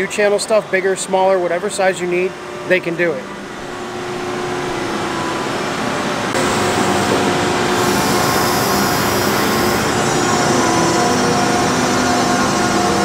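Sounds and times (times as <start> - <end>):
industrial machinery hiss and hum: 3.4 - 10.4
faint steady tones: 7.8 - 9.9.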